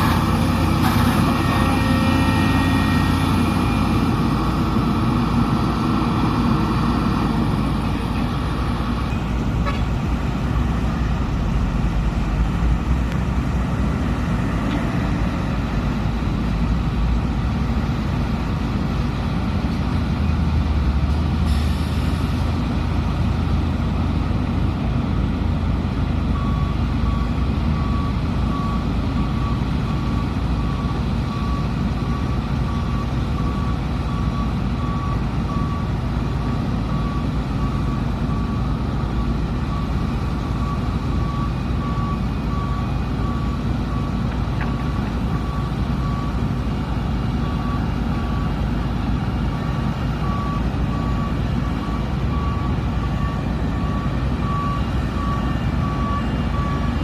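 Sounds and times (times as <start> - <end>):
reversing alarm beeping: 0.0 - 9.6, 26.3 - 57.0
excavator diesel engine running: 0.0 - 57.0.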